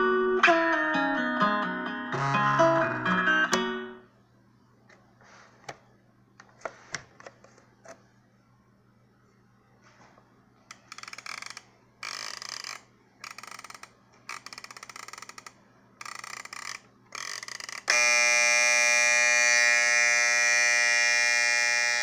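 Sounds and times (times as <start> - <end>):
alarm clock buzzer: 17.2 - 22.0.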